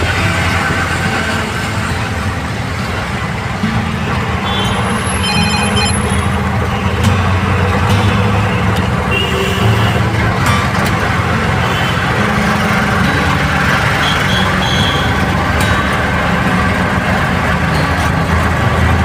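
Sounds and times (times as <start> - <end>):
vehicle engine drone: 0.0 - 19.0
high-pitched beeping: 4.6 - 6.6.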